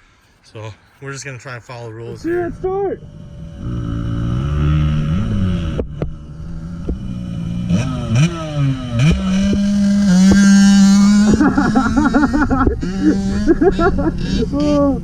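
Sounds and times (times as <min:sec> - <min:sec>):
dirt bike engine revving: 0:02.2 - 0:15.0.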